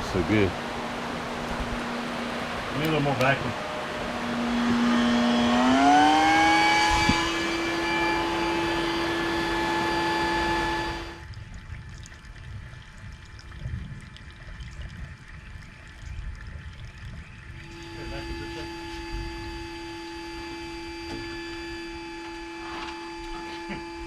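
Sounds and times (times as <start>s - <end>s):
vacuum motor whining: 0.0s - 11.2s, 17.6s - 24.0s.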